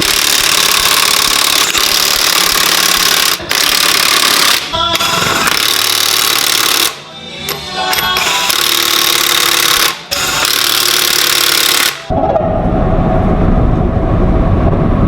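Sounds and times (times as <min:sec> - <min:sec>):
impact wrench running: 0:00.0 - 0:07.0, 0:07.9 - 0:12.1.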